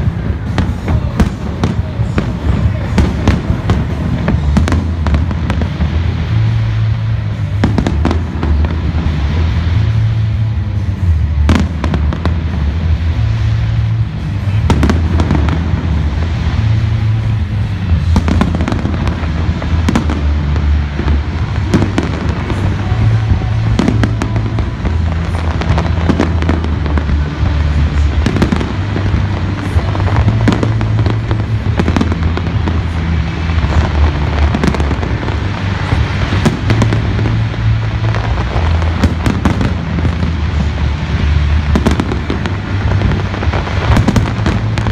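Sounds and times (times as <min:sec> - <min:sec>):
fireworks bangs and crackles: 0:00.0 - 0:44.9
loud music with heavy bass: 0:00.0 - 0:44.9.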